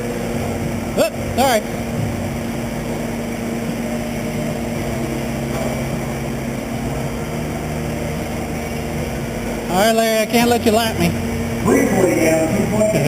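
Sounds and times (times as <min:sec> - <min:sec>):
constant hum: 0:00.0 - 0:13.0.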